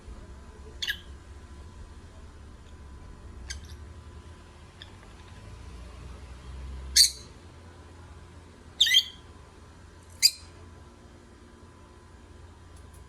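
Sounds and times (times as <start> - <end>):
lovebirds chirping: 0.8 - 1.2, 8.8 - 9.2.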